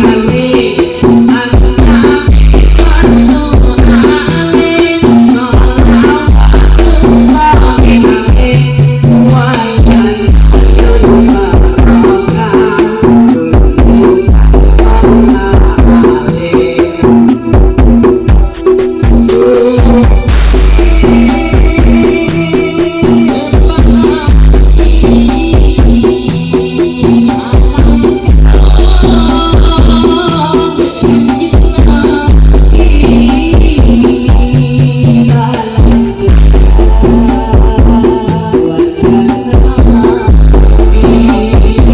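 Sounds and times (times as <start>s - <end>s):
heavy sub-bass pulses: 0.0s - 16.5s, 17.4s - 41.9s
loud dance music: 0.0s - 41.9s
fast shaker-like percussion: 17.3s - 34.7s.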